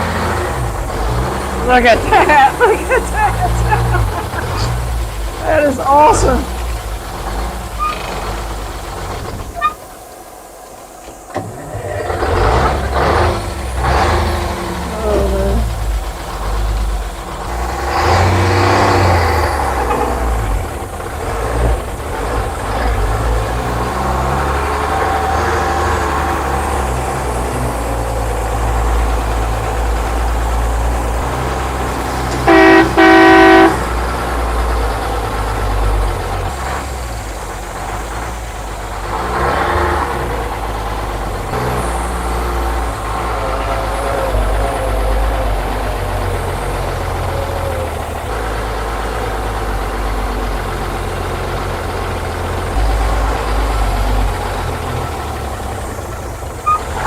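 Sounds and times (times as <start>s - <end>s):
truck horn honking: 0.0s - 6.8s, 12.3s - 16.6s, 22.9s - 36.0s, 56.6s - 57.0s
truck engine running: 0.0s - 57.0s.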